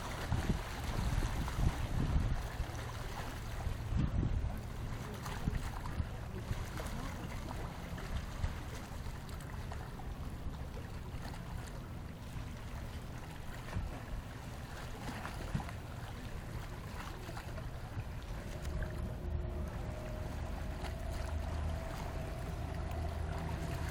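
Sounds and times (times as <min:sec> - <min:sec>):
water lapping at shore: 0:00.0 - 0:23.9
wind rumbling on microphone: 0:00.0 - 0:23.9
faint steady hum: 0:05.8 - 0:23.9.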